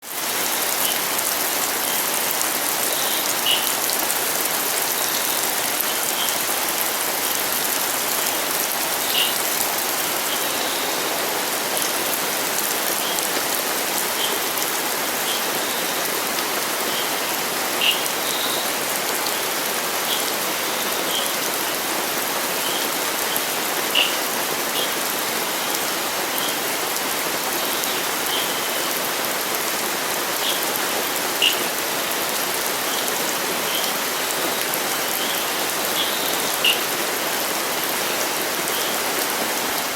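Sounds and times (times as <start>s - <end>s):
rain pattering on surfaces: 0.0s - 39.9s.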